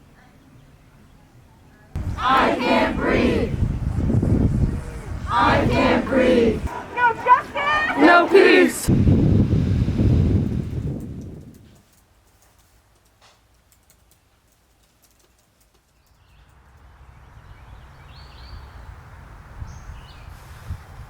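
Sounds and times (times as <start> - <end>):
steady rush of noise: 2.0 - 10.9
faint clicks: 11.0 - 16.6.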